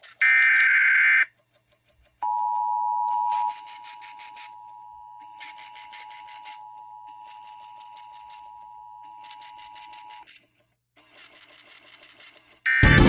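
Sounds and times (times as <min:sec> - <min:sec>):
two-tone attention signal: 0:02.2 - 0:10.2, 0:12.7 - 0:13.0.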